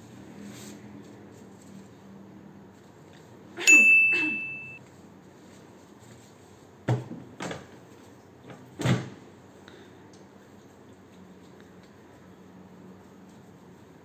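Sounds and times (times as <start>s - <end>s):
bright high ding: 3.6s - 4.8s.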